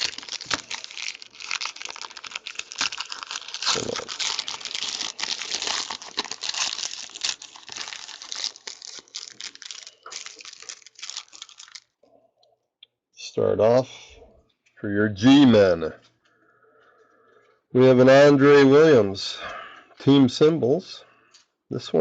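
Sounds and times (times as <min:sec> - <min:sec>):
plastic wrapping crinkling and tearing: 0:00.0 - 0:12.0.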